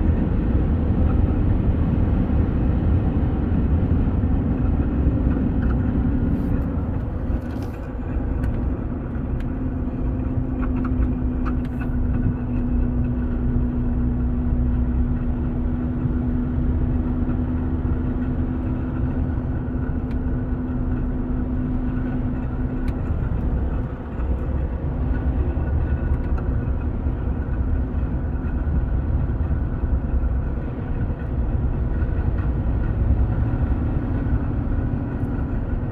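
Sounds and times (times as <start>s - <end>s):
car engine droning: 0.0s - 35.9s.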